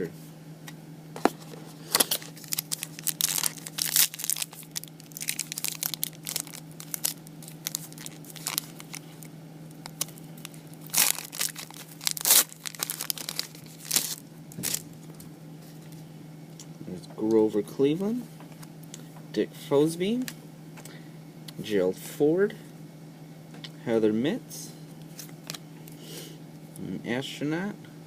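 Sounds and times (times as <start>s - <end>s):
low steady hum: 0.0s - 28.0s
card pack wrapper crinkling: 1.3s - 14.9s.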